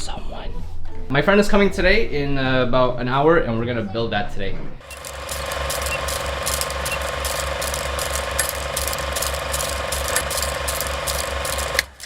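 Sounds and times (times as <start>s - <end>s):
mechanical clicking and whirring: 4.8s - 12.0s.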